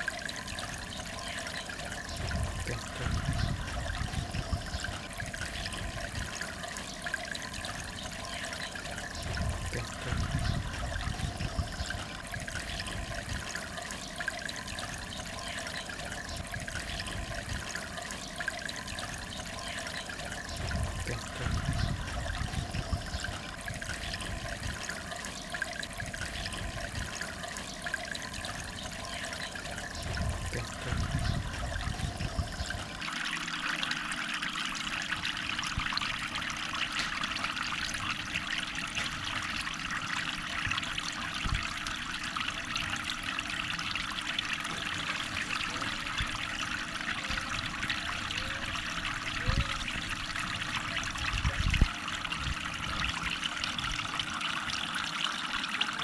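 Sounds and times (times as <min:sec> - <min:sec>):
water splashing into pond: 0:00.0 - 0:33.1.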